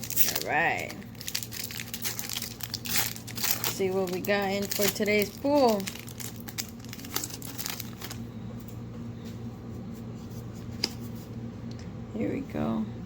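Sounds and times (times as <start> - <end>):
foil wrapper crinkling and tearing: 0.0 - 8.3
handling cards: 0.0 - 8.8.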